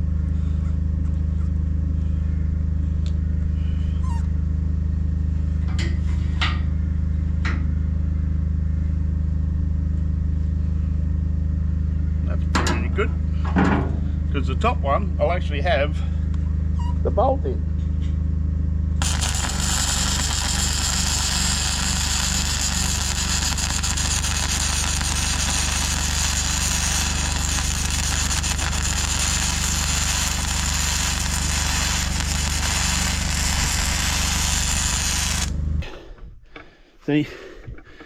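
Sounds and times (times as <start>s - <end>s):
steady low hum: 0.0s - 38.0s
welding arc crackling: 19.0s - 35.8s.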